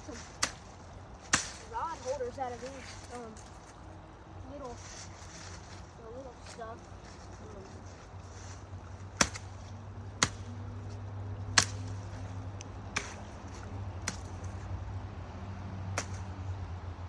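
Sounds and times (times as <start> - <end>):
machete chopping wood: 0.1 - 1.8, 9.1 - 10.8, 11.5 - 14.6, 15.9 - 16.4.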